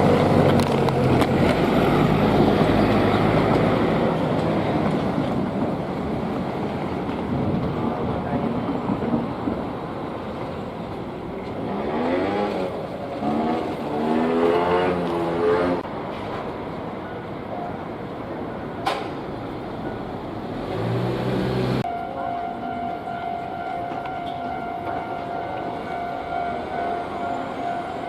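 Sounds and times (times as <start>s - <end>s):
vehicle accelerating away: 11.6s - 15.8s, 20.6s - 21.8s.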